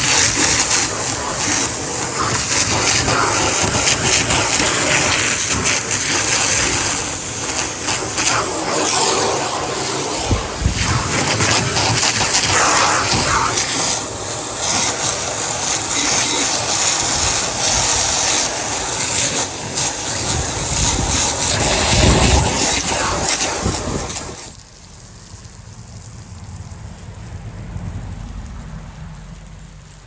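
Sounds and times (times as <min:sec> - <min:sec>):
loud rushing hiss: 0:00.0 - 0:24.6.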